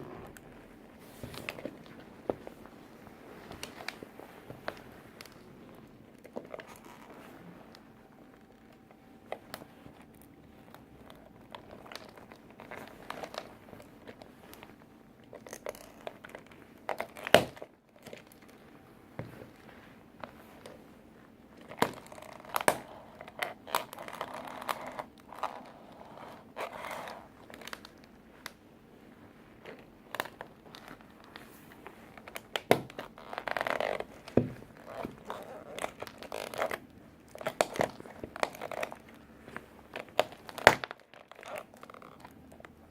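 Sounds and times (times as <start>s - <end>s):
crinkling and crunching: 0.0s - 42.9s
plastic toy cracking: 39.9s - 42.6s.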